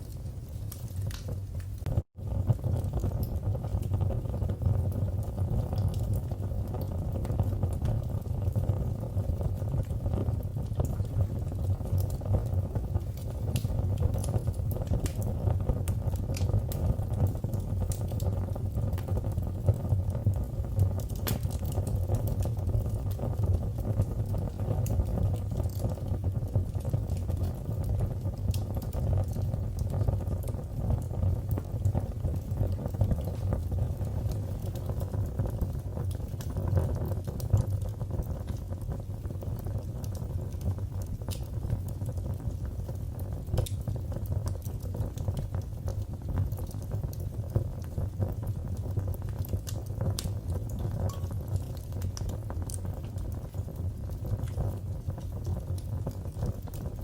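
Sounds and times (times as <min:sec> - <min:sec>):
fire crackles and pops: 0:00.0 - 0:57.0
fire rumbling: 0:00.0 - 0:57.0.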